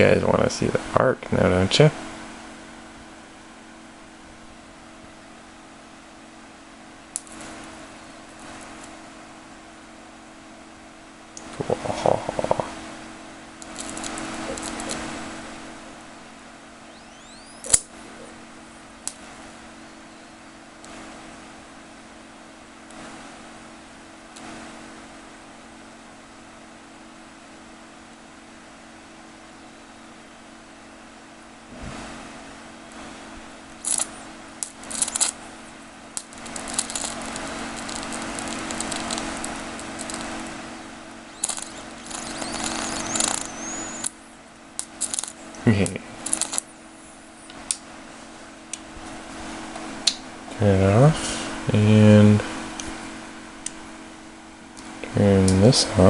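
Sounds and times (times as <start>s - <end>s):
transformer electrical hum: 0.0s - 56.0s
sharp electrical snap: 13.6s - 15.1s, 17.1s - 18.0s, 33.8s - 35.5s, 36.1s - 40.6s, 41.3s - 46.7s
high-voltage arc crackling: 13.6s - 16.0s, 33.7s - 46.8s.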